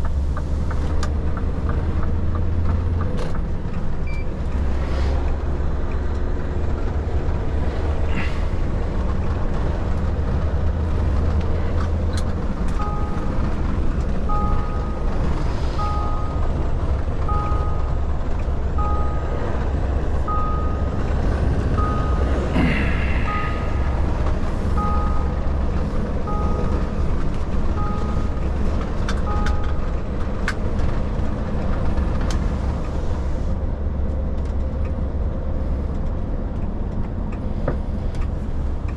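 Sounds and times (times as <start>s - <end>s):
truck diesel engine running: 0.0s - 38.9s
electronic two-tone beep: 12.8s - 13.4s, 14.3s - 16.6s, 17.3s - 18.1s, 18.7s - 19.4s, 20.2s - 21.0s, 21.8s - 23.9s, 24.8s - 25.4s, 26.2s - 27.1s, 27.7s - 28.6s, 29.2s - 29.9s.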